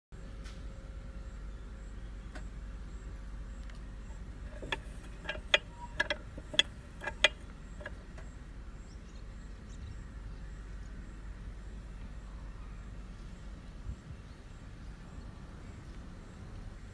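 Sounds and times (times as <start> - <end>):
low steady hum: 0.2 - 16.9
sharp clicks and taps: 4.5 - 8.0.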